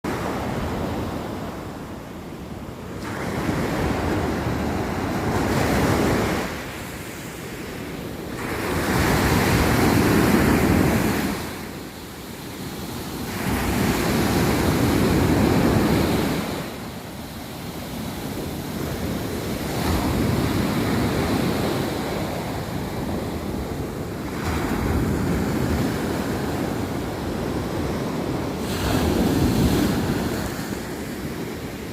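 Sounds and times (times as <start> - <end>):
sea waves breaking: 2.8 - 31.9.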